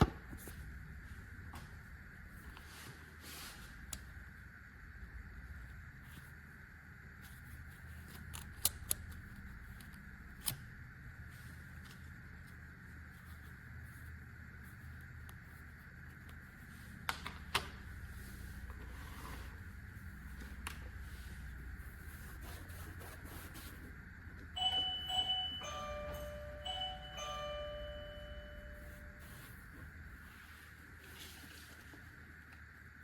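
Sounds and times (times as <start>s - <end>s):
steady hum and hiss: 0.0s - 33.0s
electronic chime: 24.6s - 29.6s.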